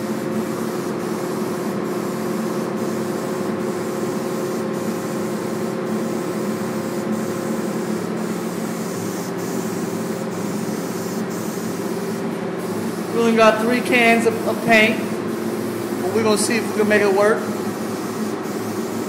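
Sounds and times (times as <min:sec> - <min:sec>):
paint spraying hiss: 0:00.0 - 0:19.0
steady hum: 0:00.0 - 0:19.0.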